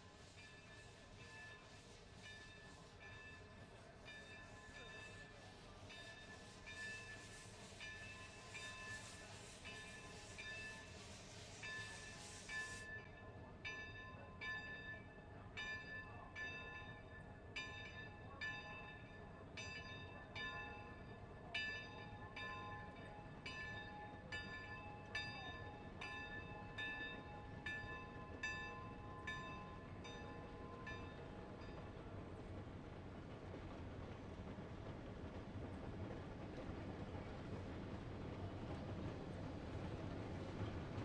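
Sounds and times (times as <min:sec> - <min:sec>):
high steam hiss: 0:00.0 - 0:13.0.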